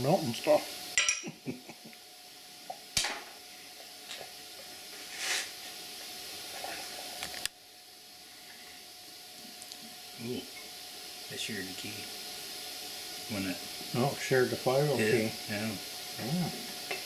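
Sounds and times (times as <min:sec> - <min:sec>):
steady background hiss: 0:00.0 - 0:17.0
short hissing puff: 0:04.9 - 0:07.3.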